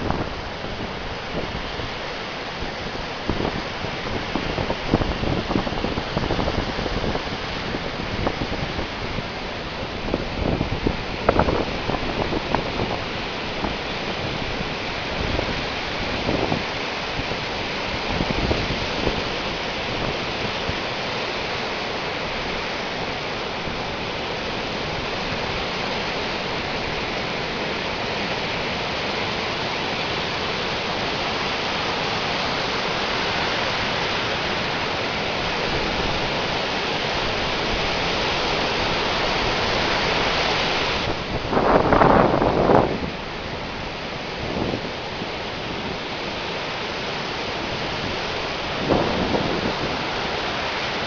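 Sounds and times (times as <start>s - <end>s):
wind buffeting microphone: 0.0s - 20.9s, 32.5s - 46.2s, 47.2s - 51.0s
sea waves washing in: 0.0s - 51.0s.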